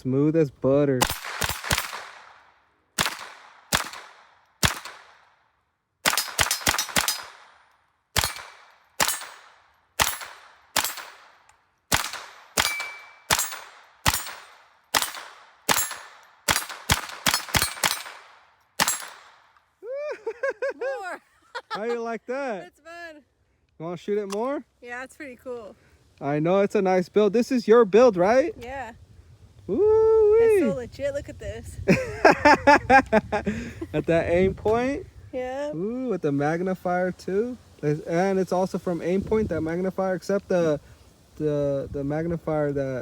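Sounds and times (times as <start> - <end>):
pistol gunshots: 1.0 - 5.4, 6.0 - 19.5.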